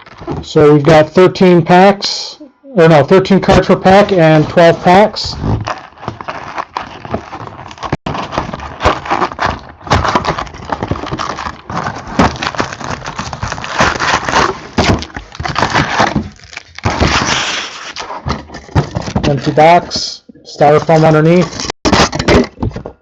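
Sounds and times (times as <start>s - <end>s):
cardboard scraping and knocking: 3.9s - 23.0s
foil wrappers crinkling: 5.7s - 18.0s.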